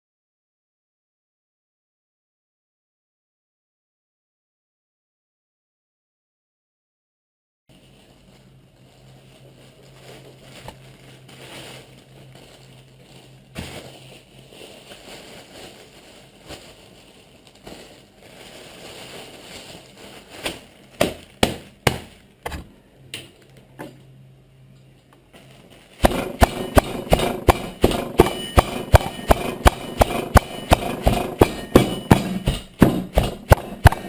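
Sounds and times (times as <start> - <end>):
faint steady hum: 7.7 - 34.0
knocks and handling noise: 24.8 - 34.0.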